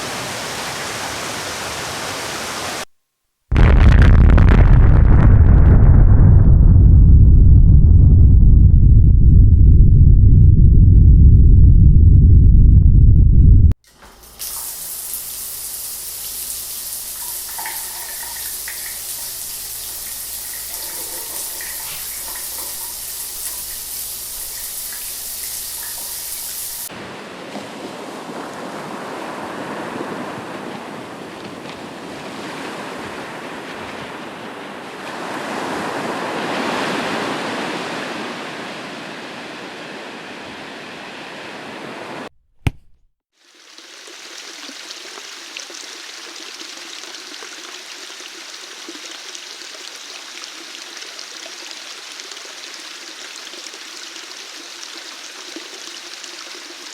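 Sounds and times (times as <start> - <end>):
rushing water: 0.0 - 2.9, 14.0 - 39.9, 43.4 - 56.9.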